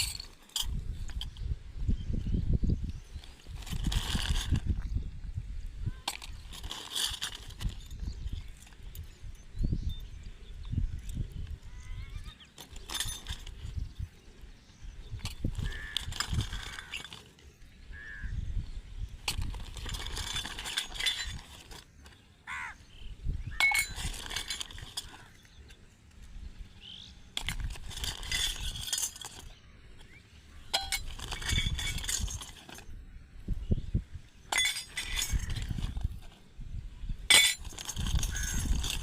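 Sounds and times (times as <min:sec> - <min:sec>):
metal toy pieces clinking: 0:00.0 - 0:01.4, 0:06.0 - 0:08.8, 0:12.2 - 0:13.8, 0:19.2 - 0:22.2, 0:23.5 - 0:25.5, 0:27.4 - 0:29.6, 0:30.6 - 0:33.0, 0:34.5 - 0:36.3, 0:37.2 - 0:39.0.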